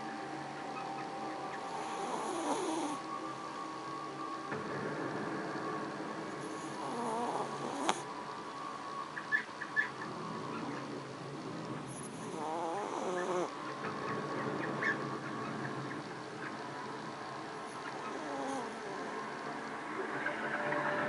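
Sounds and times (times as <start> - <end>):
faint hum: 0.0 - 21.0
dog snoring: 1.6 - 3.1, 6.4 - 8.1, 11.8 - 13.6, 17.7 - 19.2.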